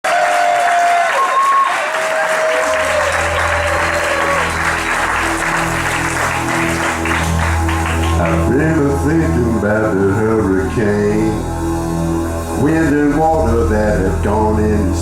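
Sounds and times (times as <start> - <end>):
audience applause and cheering: 0.0 - 9.0
rock band playing: 2.6 - 14.8.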